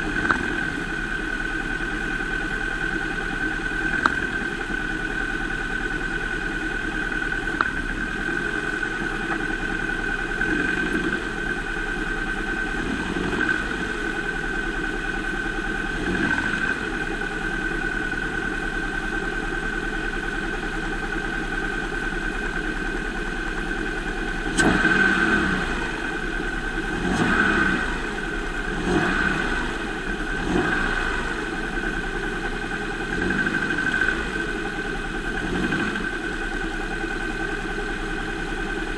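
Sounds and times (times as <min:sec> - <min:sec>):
car engine idling: 0:00.0 - 0:38.9
short engine thumps: 0:03.8 - 0:04.6.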